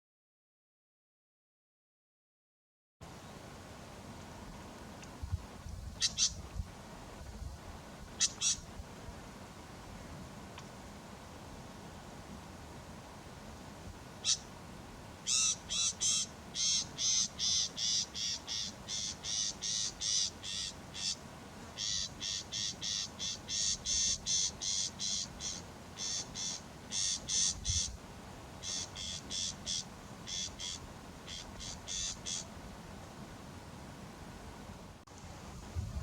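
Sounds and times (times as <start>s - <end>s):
bird harsh chattering call: 8.2s - 8.6s, 14.2s - 14.4s, 15.3s - 21.2s, 21.8s - 27.9s, 28.6s - 32.5s.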